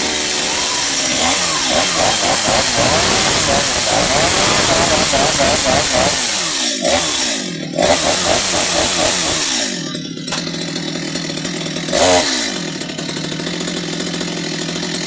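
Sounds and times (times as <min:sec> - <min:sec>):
chainsaw engine revving and idling: 0:00.0 - 0:15.0.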